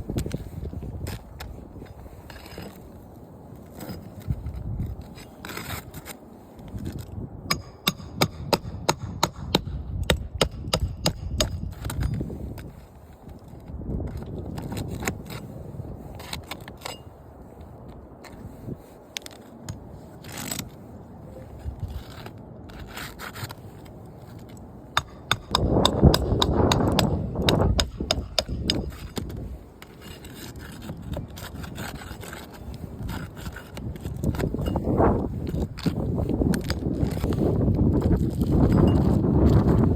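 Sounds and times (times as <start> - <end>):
low scraping and handling noise: 0.0 - 39.9
hammer striking nails: 7.5 - 12.0, 25.0 - 29.2
scraping on roof shingles: 21.9 - 34.6.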